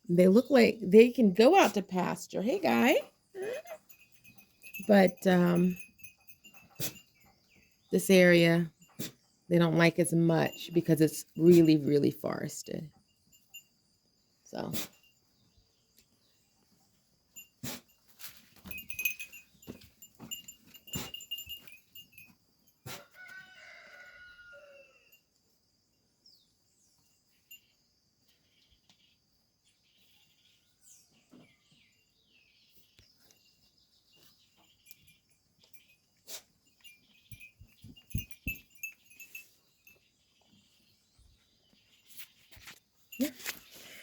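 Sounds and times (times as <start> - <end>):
crickets chirring: 17.3 - 22.8, 34.6 - 40.0
rooster crowing: 22.9 - 25.1.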